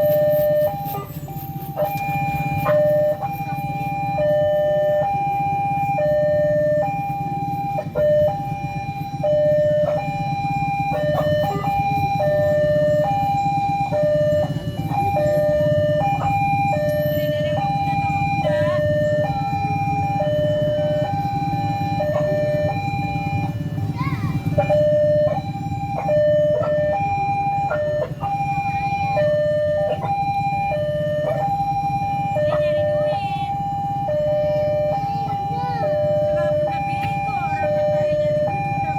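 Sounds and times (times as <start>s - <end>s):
level crossing alarm two tones: 0.0s - 38.9s.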